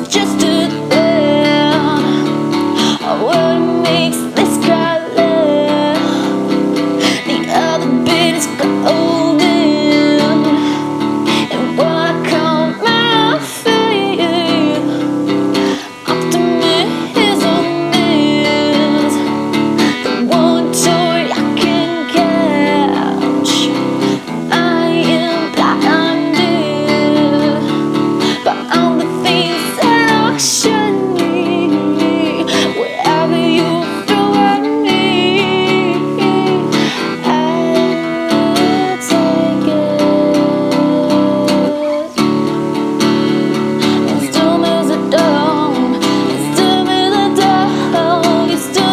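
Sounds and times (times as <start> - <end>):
guitar strumming chords: 0.0 - 48.9
indie rock song: 0.0 - 48.9
person singing with vibrato: 0.0 - 48.9.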